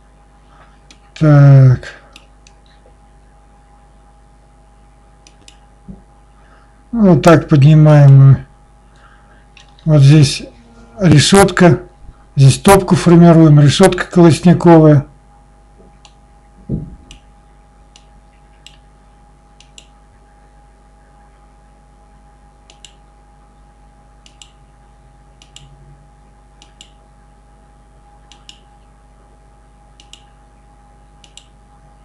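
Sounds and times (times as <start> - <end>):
faint steady hum: 0.0 - 32.0
computer mouse clicking: 5.2 - 5.6, 19.6 - 19.9, 22.7 - 23.0, 24.2 - 24.6, 25.4 - 25.7, 26.6 - 27.0, 28.3 - 28.7, 30.0 - 30.3, 31.2 - 31.5
dull low thump: 16.6 - 17.1.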